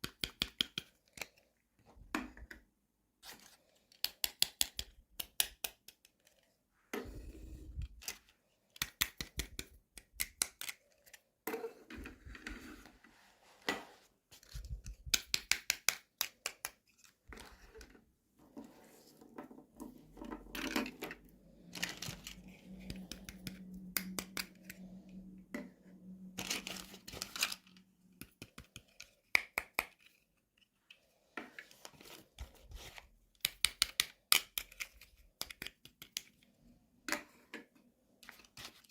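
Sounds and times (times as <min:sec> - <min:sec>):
packaging clicks and snips: 0:03.9 - 0:06.3, 0:08.0 - 0:11.2, 0:21.7 - 0:24.8.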